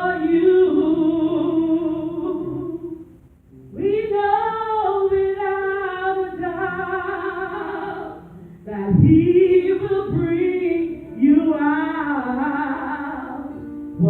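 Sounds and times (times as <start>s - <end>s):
gospel singing: 0.0s - 3.1s, 3.8s - 13.8s.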